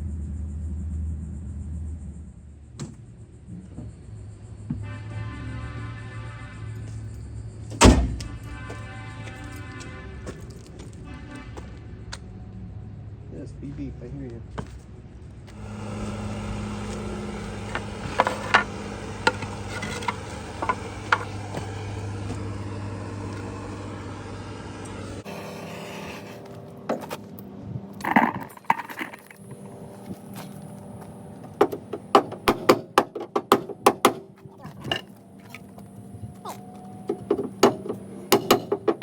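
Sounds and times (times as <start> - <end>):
steady low hum: 15.4 - 39.0
hand tools tapping sheet metal: 31.5 - 35.0, 37.1 - 39.0.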